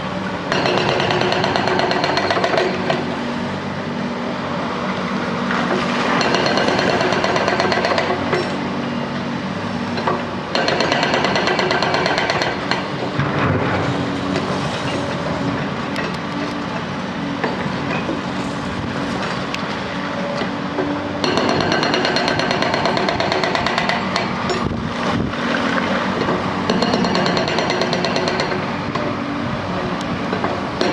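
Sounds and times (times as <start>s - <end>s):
hydraulic breaker hammering concrete: 0.5s - 3.1s, 6.2s - 8.6s, 10.0s - 13.4s, 21.2s - 24.8s, 26.2s - 29.2s, 30.3s - 30.9s
diesel engine running: 2.4s - 30.9s.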